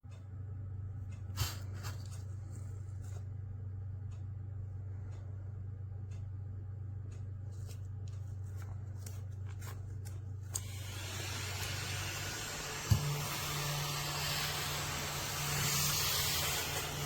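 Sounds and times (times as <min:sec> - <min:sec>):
low steady hum: 0:00.0 - 0:17.0
steady hiss: 0:10.6 - 0:17.0.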